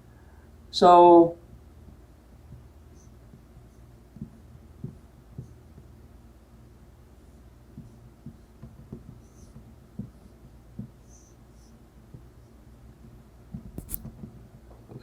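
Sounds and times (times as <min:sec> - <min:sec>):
pen tapping while writing: 0:07.8 - 0:11.0, 0:13.5 - 0:14.2
short high pen squeaks: 0:13.8 - 0:14.1.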